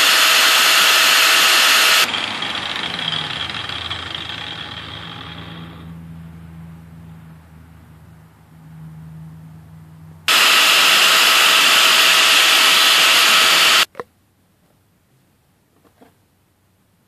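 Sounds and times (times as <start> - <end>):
grinder grinding steel nail: 0.0 - 5.4, 10.3 - 13.9.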